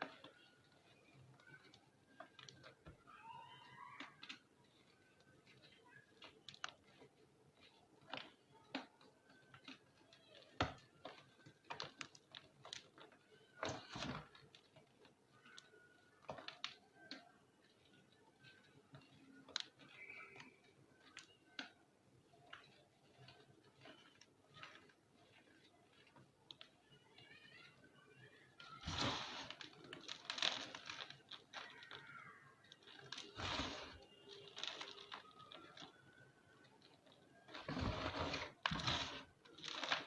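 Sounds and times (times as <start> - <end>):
chalk block crunching: 32.8 - 35.8.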